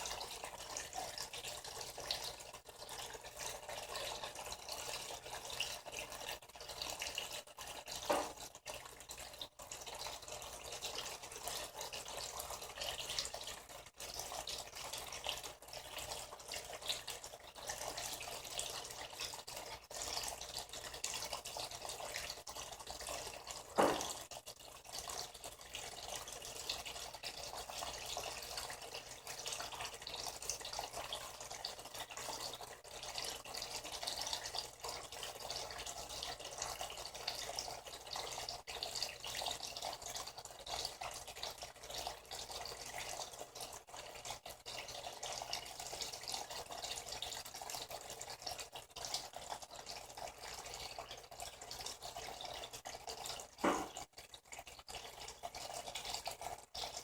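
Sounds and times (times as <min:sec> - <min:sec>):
water running into washing machine: 0:00.0 - 0:57.0.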